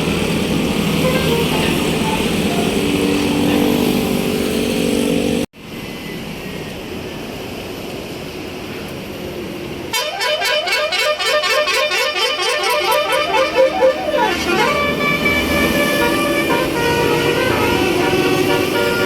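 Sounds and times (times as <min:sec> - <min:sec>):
road noise: 0:00.0 - 0:19.0
multi-tone bus horn melody: 0:00.8 - 0:04.1, 0:09.9 - 0:19.0
held tones: 0:10.0 - 0:16.6.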